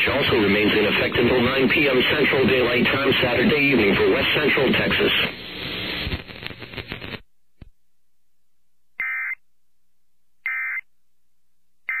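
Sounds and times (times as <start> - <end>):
crackly radio noise: 0.0 - 7.7.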